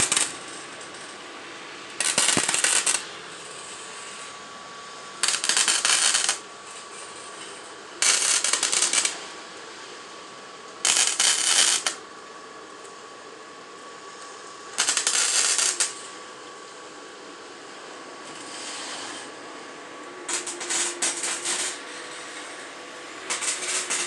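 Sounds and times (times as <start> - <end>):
welding sputter: 0.0 - 1.2, 2.0 - 3.1, 5.2 - 6.4, 8.0 - 9.2, 10.8 - 12.0, 14.8 - 16.0, 20.3 - 21.8, 23.3 - 24.0.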